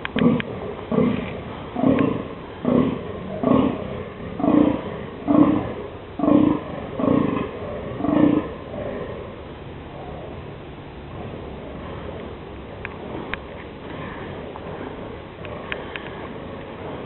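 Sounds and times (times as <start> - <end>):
deer groaning: 0.2 - 10.5.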